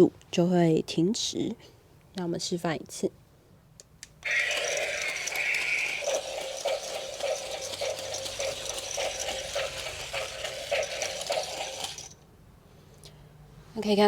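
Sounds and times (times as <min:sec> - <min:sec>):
toy gear motor running: 0:04.2 - 0:12.2
walking mechanism clicking: 0:04.2 - 0:12.2.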